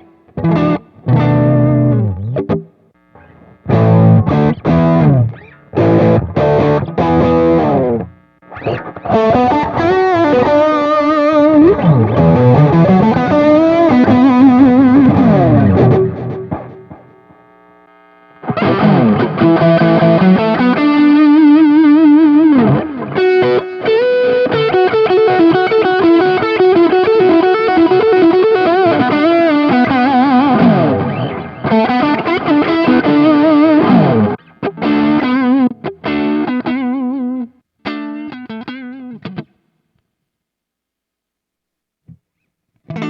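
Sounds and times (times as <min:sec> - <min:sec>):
distorted electric guitar lead: 0:00.0 - 0:39.6.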